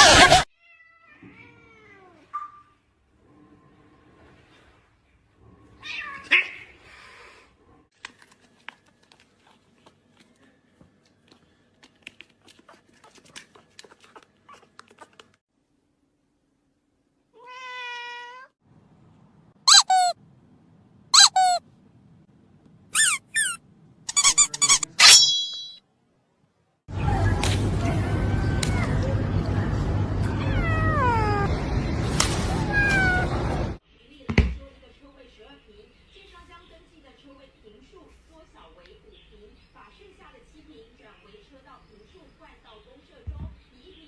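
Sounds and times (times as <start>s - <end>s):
cats meowing: 0.0s - 2.8s, 5.8s - 6.8s, 17.4s - 18.6s, 28.0s - 29.5s, 30.2s - 31.6s, 32.3s - 33.8s.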